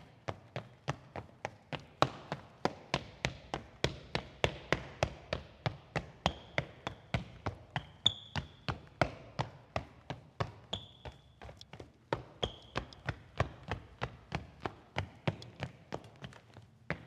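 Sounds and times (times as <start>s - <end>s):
running footsteps on wooden floor: 0.2s - 17.0s.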